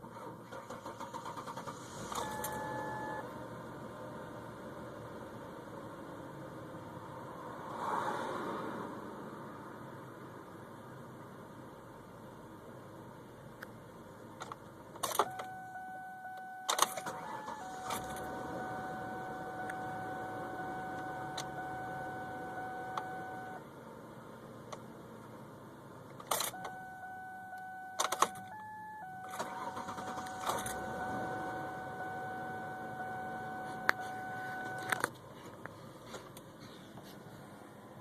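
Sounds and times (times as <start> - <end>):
car starter whine and hum: 0.0 - 6.5, 14.4 - 23.8, 24.6 - 35.4
ignition key clicks: 14.4 - 15.6, 16.3 - 18.3, 19.3 - 23.3, 26.1 - 30.9, 32.9 - 35.2.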